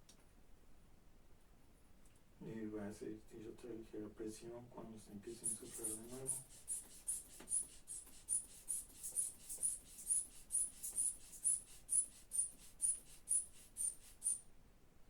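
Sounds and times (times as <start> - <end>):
inflation bulb pumping: 5.3 - 14.4.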